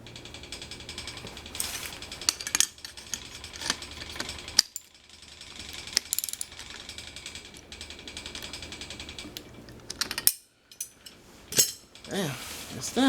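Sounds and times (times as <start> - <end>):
rapid mechanical ticking: 0.0 - 10.3.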